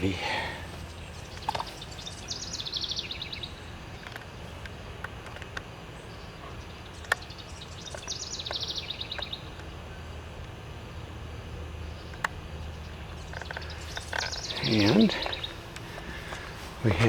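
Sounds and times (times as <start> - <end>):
songbird trilling: 0.0 - 4.9, 5.9 - 10.3, 11.0 - 17.0
low outdoor rumble: 0.0 - 17.0
sharp clicks: 7.0 - 9.7, 12.1 - 12.4, 13.2 - 16.4.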